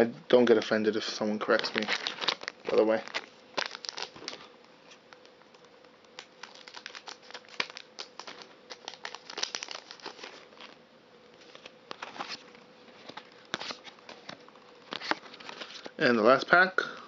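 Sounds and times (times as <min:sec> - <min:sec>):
faint steady hum: 0:00.0 - 0:17.0
foil wrapper crinkling: 0:00.4 - 0:10.8.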